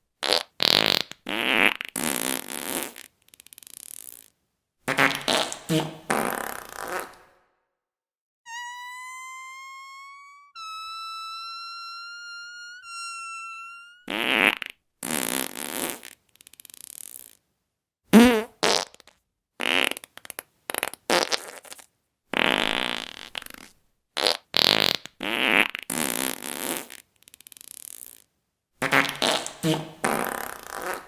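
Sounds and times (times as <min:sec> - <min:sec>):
fart sounds: 0:00.2 - 0:04.3, 0:04.9 - 0:07.5, 0:12.4 - 0:17.4, 0:18.1 - 0:31.0
high tone: 0:08.5 - 0:14.1.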